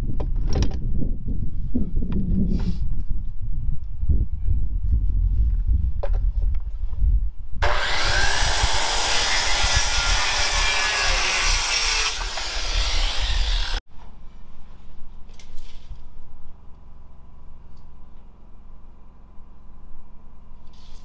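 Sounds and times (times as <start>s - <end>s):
saw cutting wood: 7.6s - 13.8s.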